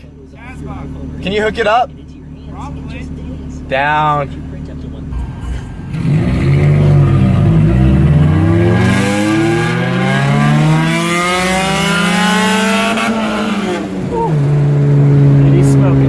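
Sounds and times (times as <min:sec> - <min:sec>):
car engine revving hard: 0:03.5 - 0:16.0.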